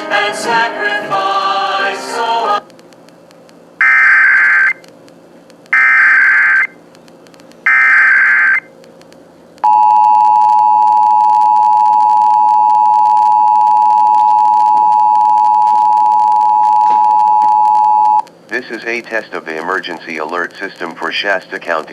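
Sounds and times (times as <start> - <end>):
warbling data bursts: 3.8 - 4.8, 5.7 - 6.8, 7.6 - 8.7.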